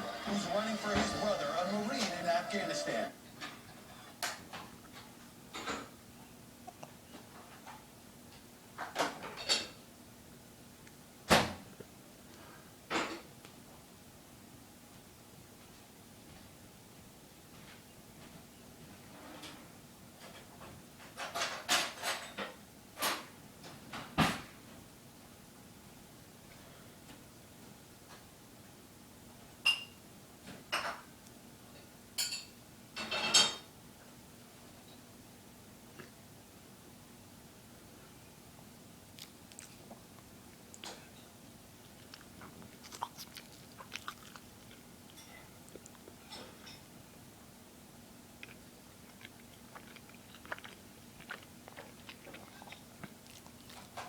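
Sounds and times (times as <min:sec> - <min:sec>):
person chewing: 0:06.6 - 0:07.1, 0:39.1 - 0:41.1, 0:41.7 - 0:46.7, 0:48.3 - 0:54.0.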